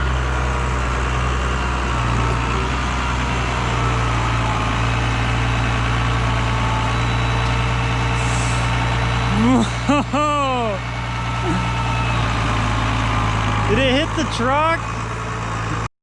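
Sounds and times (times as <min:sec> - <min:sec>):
vehicle engine idling: 0:00.0 - 0:15.9.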